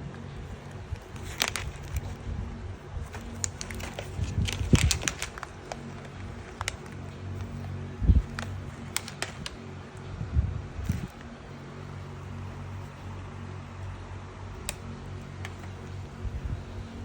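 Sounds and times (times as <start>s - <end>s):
low steady hum: 0.0s - 17.0s
cat chewing crunchily: 3.0s - 10.0s.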